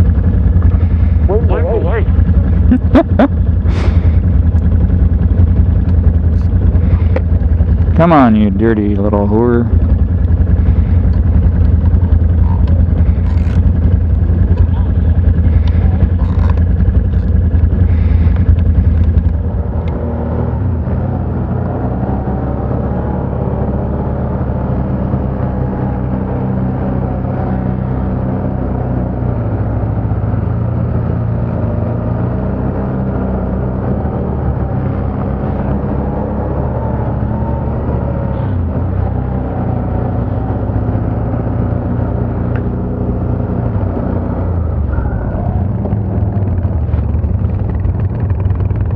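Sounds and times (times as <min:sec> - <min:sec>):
atv engine revving: 0:00.0 - 0:48.9.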